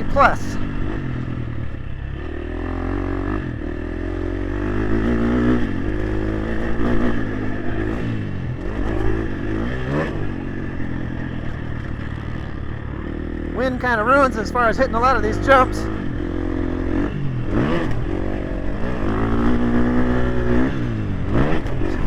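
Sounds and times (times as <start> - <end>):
dirt bike engine revving: 0.0 - 22.0.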